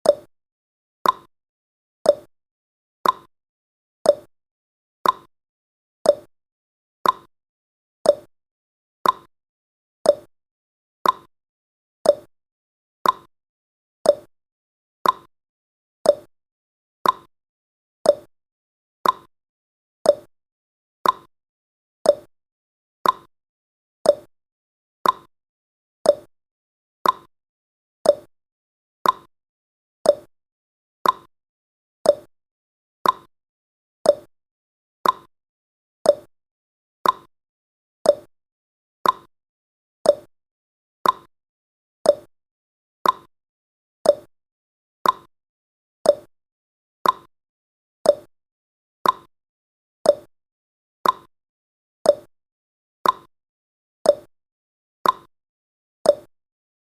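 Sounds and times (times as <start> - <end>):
timer ticking: 0.0 - 0.3, 1.0 - 1.3, 2.1 - 2.3, 3.0 - 3.3, 4.1 - 4.3, 5.0 - 5.3, 6.1 - 6.3, 7.0 - 7.3, 8.1 - 8.3, 9.0 - 9.3, 10.1 - 10.3, 11.0 - 11.3, 12.1 - 12.3, 13.0 - 13.3, 14.1 - 14.3, 15.0 - 15.3, 16.1 - 16.3, 17.0 - 17.3, 18.1 - 18.3, 19.0 - 19.3, 20.1 - 20.3, 21.0 - 21.3, 22.1 - 22.3, 23.0 - 23.3, 24.1 - 24.3, 25.0 - 25.3, 26.0 - 26.3, 27.0 - 27.3, 28.0 - 28.3, 29.0 - 29.3, 30.0 - 30.3, 31.0 - 31.3, 32.1 - 32.3, 33.0 - 33.3, 34.0 - 34.3, 35.0 - 35.3, 36.0 - 36.3, 37.0 - 37.3, 38.0 - 38.3, 39.0 - 39.3, 40.0 - 40.3, 41.0 - 41.3, 42.0 - 42.3, 43.0 - 43.3, 44.0 - 44.3, 45.0 - 45.3, 46.1 - 46.3, 47.0 - 47.3, 48.1 - 48.3, 49.0 - 49.3, 50.1 - 50.3, 51.0 - 51.3, 52.1 - 52.3, 53.0 - 53.3, 54.1 - 54.3, 55.0 - 55.3, 56.1 - 56.3.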